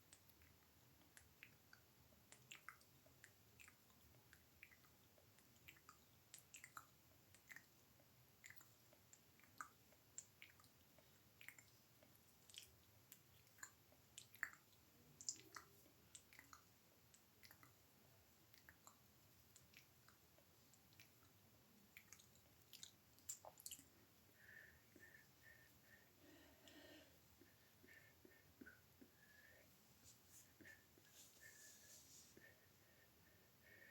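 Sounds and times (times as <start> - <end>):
tongue and lip clicks: 0.0 - 7.8, 8.4 - 17.8, 18.5 - 25.6.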